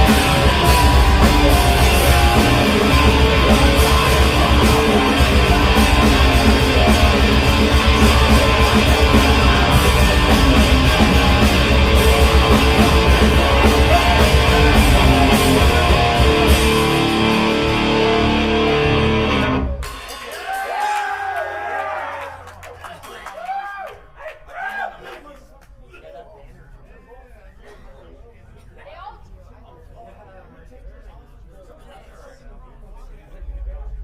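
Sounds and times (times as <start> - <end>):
live rock band playing: 0.0 - 20.4.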